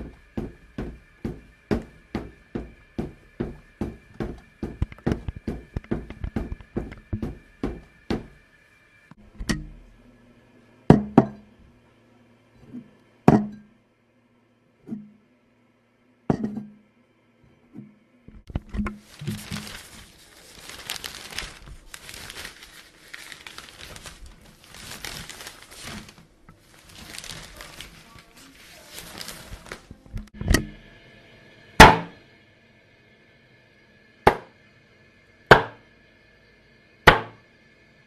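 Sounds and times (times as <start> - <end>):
crinkling and rustling: 18.4 - 30.4.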